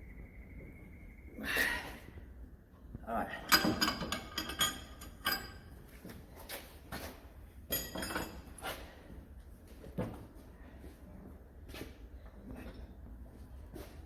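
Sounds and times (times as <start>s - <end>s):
metal knocks and clinks: 3.4s - 5.7s, 7.7s - 8.5s.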